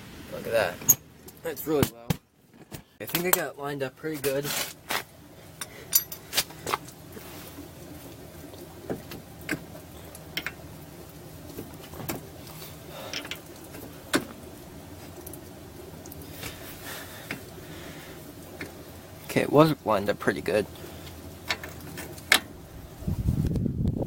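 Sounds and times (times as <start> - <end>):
metal clinks and knocks: 5.6 - 6.4.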